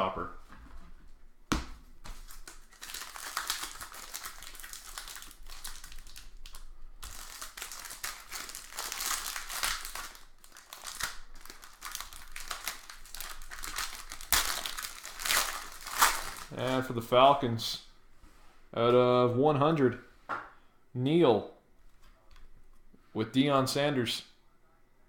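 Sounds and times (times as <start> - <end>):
plastic wrapper crinkling and tearing: 2.1 - 17.0.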